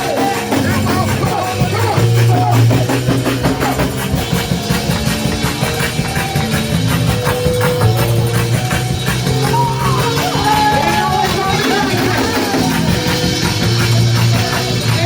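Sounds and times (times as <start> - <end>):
band playing praise music: 0.0 - 15.0
bass notes: 0.0 - 15.0
drum hits: 0.0 - 15.0
voices singing or shouting: 7.2 - 15.0.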